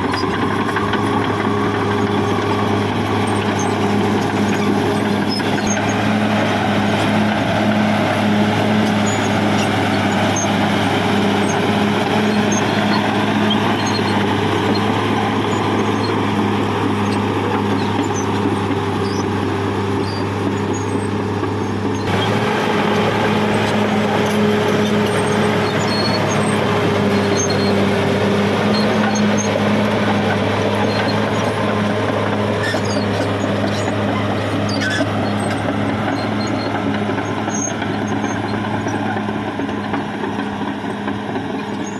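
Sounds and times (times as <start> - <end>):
bulldozer diesel engine droning: 0.0 - 41.9.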